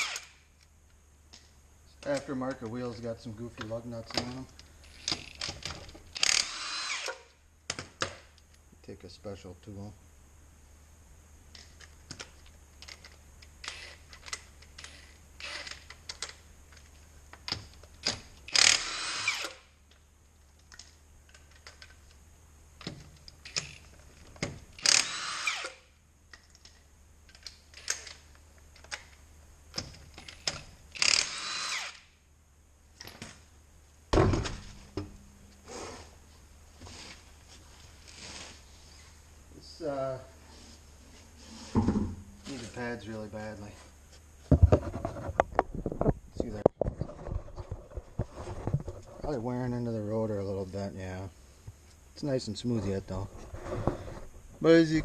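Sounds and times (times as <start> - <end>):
power tool spinning lug nuts: 0.0 - 0.4, 4.8 - 7.3, 13.6 - 14.1, 14.8 - 15.9, 18.5 - 19.7, 24.7 - 25.9, 30.3 - 32.1.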